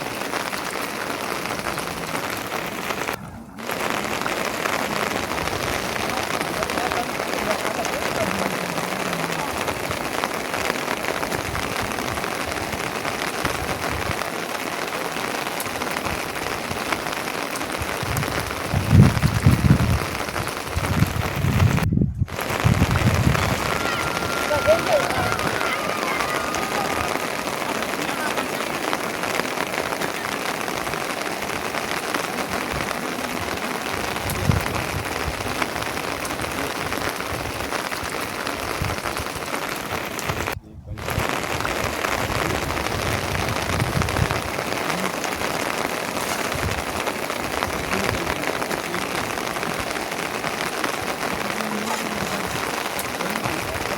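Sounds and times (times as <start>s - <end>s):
rain pattering: 0.0s - 53.9s
low rumbling swells: 18.4s - 29.5s.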